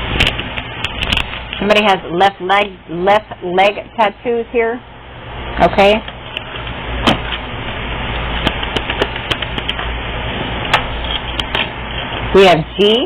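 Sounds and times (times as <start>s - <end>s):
low hum and hiss: 0.0s - 13.0s
sharp clicks and taps: 8.4s - 9.9s.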